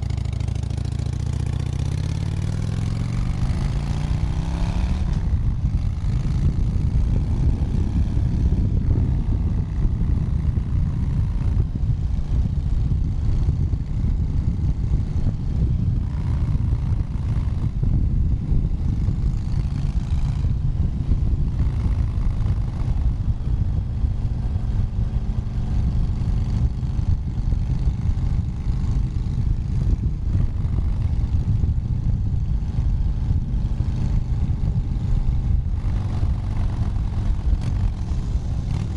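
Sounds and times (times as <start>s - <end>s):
motorcycle engine deep rumble: 0.0s - 38.9s.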